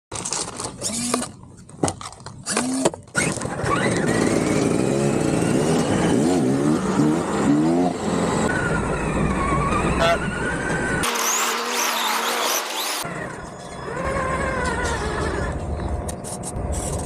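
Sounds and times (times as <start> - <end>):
remote-control car motor whining: 0.8 - 1.3, 11.0 - 15.7.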